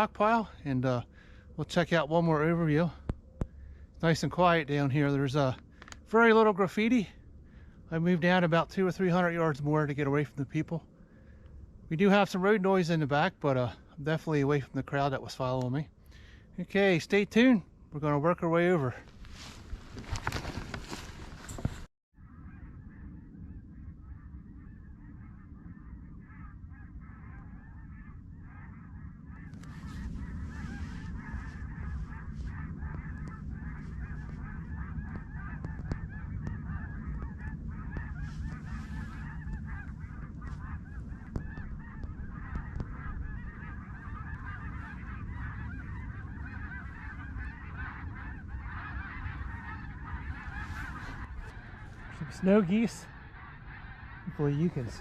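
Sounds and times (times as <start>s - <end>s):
geese honking and yelping: 0.0s - 55.0s
low rumble: 21.1s - 52.3s.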